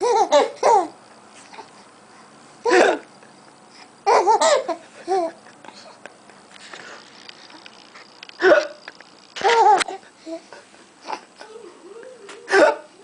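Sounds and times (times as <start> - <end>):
baby laughing: 0.0 - 1.0, 4.0 - 6.0, 9.4 - 13.0.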